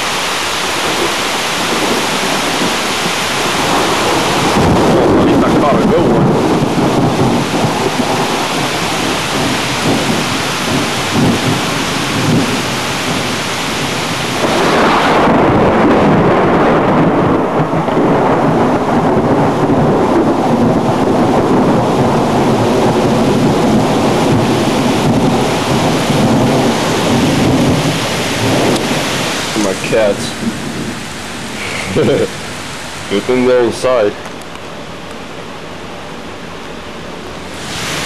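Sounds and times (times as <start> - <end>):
thunder rumbling: 0.0 - 34.4
steady rain hiss: 0.0 - 38.0.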